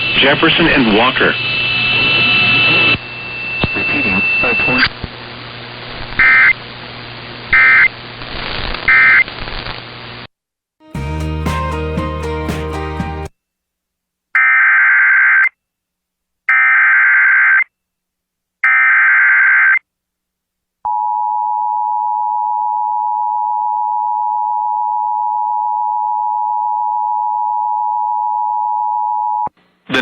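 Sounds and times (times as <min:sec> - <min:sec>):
digital data tone bursts: 0:00.2 - 0:04.9.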